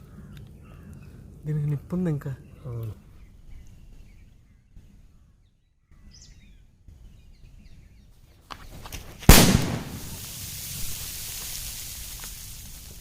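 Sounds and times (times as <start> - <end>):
faint bird chirps: 0.0 - 8.3
steady hiss: 8.5 - 13.0
firecracker bang: 9.2 - 12.8.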